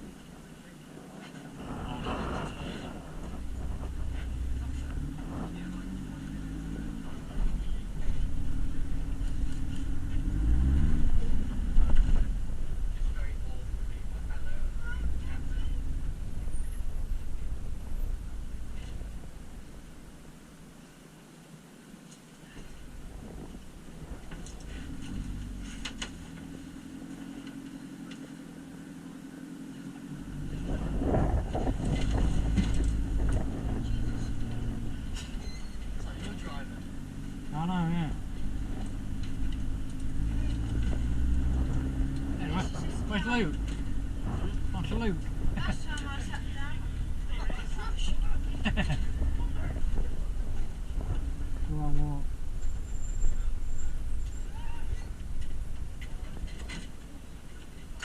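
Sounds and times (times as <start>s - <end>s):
car engine rumbling: 0.0s - 58.0s
rattles and clicks: 10.9s - 20.3s, 22.1s - 28.4s, 30.4s - 37.5s, 38.2s - 58.0s.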